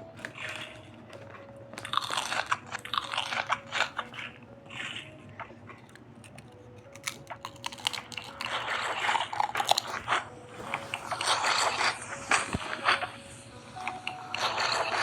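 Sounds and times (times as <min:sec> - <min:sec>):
crunchy chewing and biting: 0:00.0 - 0:13.1.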